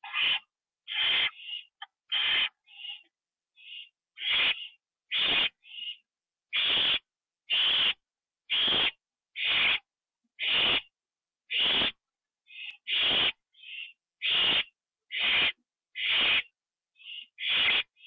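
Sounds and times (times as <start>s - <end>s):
owl rasping hiss calls: 0.0s - 10.9s, 11.5s - 18.0s.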